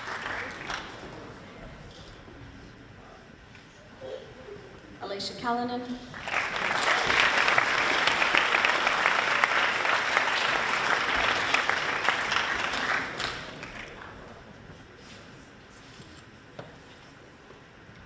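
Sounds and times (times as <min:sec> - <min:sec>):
audience applauding: 0:00.0 - 0:01.4, 0:06.2 - 0:14.4.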